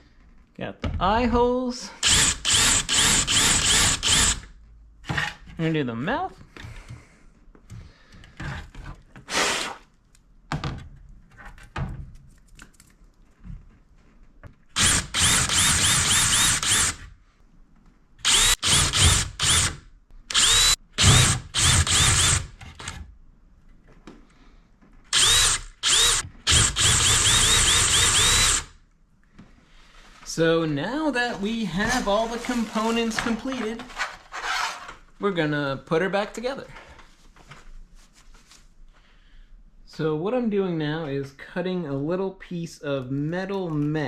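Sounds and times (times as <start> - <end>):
power tool cutting plastic: 2.0 - 4.4, 14.8 - 17.0, 18.2 - 23.0, 25.1 - 28.7.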